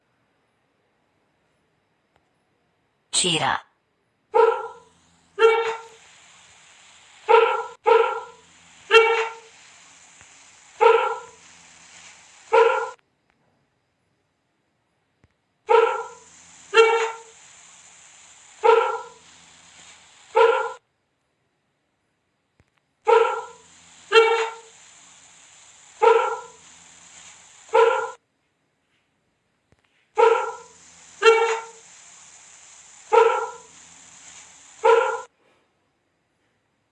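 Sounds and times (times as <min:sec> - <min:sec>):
big cat barking calls: 0:04.3 - 0:06.0, 0:07.2 - 0:09.5, 0:10.8 - 0:11.5, 0:12.5 - 0:13.0, 0:15.7 - 0:17.3, 0:18.6 - 0:19.2, 0:20.3 - 0:20.8, 0:23.1 - 0:24.7, 0:26.0 - 0:26.7, 0:27.7 - 0:28.2, 0:30.2 - 0:31.9, 0:33.0 - 0:33.8, 0:34.8 - 0:35.3.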